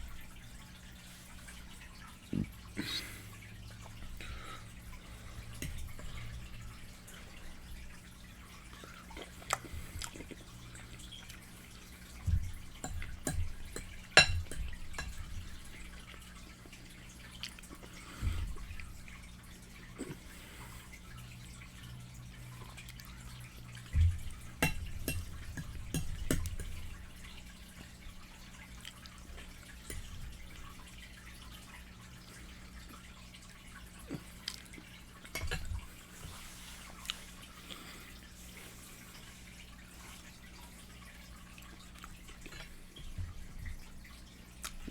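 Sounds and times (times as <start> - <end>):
person chewing: 9.1 - 10.5, 34.1 - 35.7, 37.0 - 37.8.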